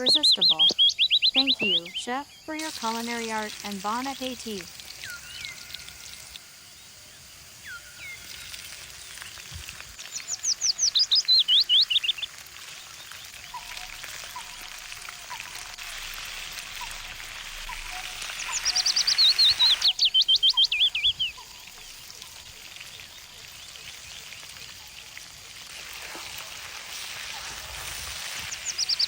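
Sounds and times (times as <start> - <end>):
birdsong phrases of rapid notes: 0.0 - 4.7
soft bird chirps: 0.0 - 15.7, 16.7 - 25.2
steady outdoor hiss: 0.0 - 29.0.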